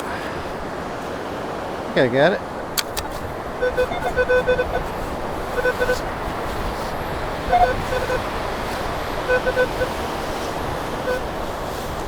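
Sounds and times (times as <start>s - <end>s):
surf: 0.0s - 12.0s
wind: 0.0s - 12.0s
metal detector beeps: 2.8s - 11.4s.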